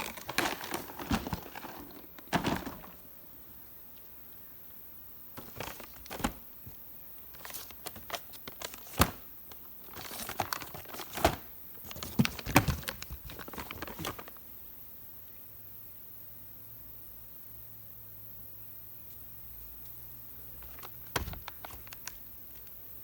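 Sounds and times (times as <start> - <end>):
plastic wrap and cardboard crinkling: 0.0 - 3.1, 5.4 - 14.4, 20.6 - 22.7.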